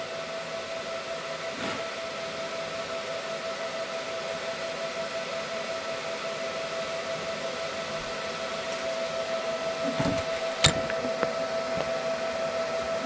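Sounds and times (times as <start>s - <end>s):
sharp click: 10.0s - 11.3s.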